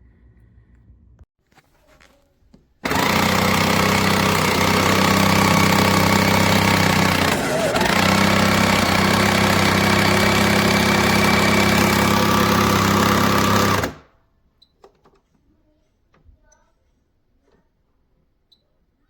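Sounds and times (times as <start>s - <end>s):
espresso machine pump buzz: 2.9s - 14.0s.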